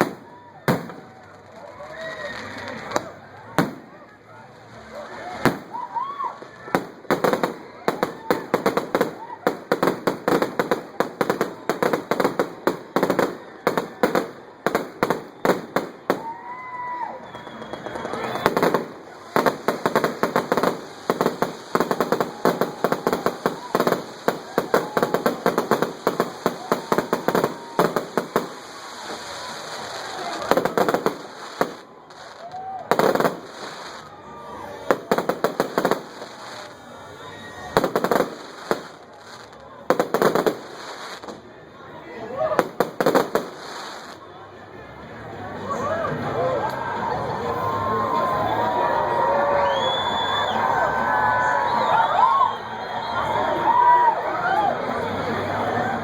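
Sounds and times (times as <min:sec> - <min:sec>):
firecrackers banging: 0:00.0 - 0:41.6, 0:42.6 - 0:44.3.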